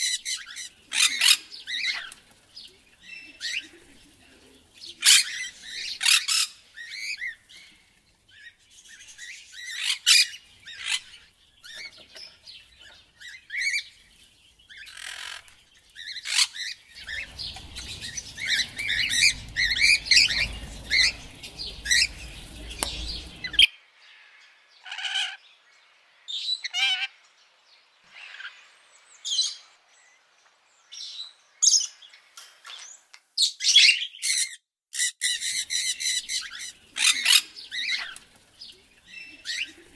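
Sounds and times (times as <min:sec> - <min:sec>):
parrots chirping and squawking: 0:00.0 - 0:02.3, 0:05.0 - 0:07.9, 0:09.1 - 0:13.9, 0:14.7 - 0:23.7, 0:33.6 - 0:39.9
low background rumble: 0:16.9 - 0:23.7.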